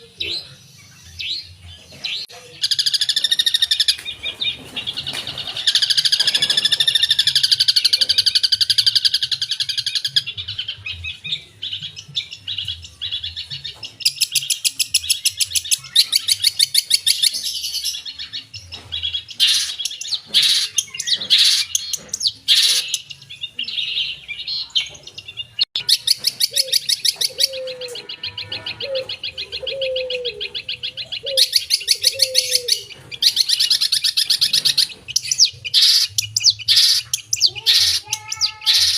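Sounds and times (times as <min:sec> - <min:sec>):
lower wavering bird notes: 0:25.8 - 0:33.4.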